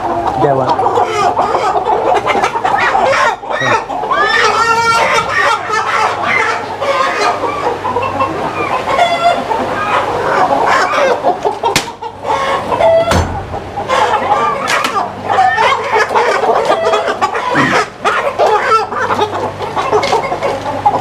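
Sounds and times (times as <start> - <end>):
chickens clucking and squawking: 0.0 - 21.0
low steady hum: 0.0 - 21.0
sharp knock: 11.8 - 12.0, 13.1 - 13.6.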